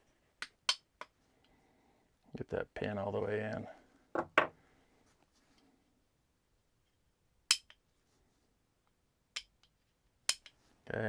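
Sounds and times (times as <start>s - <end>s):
metallic clicks of small parts: 7.5s - 7.8s, 9.4s - 10.6s.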